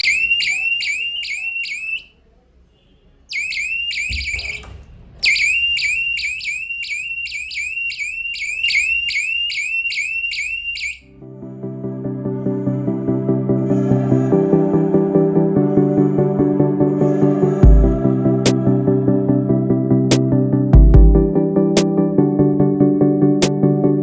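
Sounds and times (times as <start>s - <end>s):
high-pitched electronic alarm chirps: 0.0s - 2.1s, 3.3s - 11.0s
music: 11.2s - 24.0s.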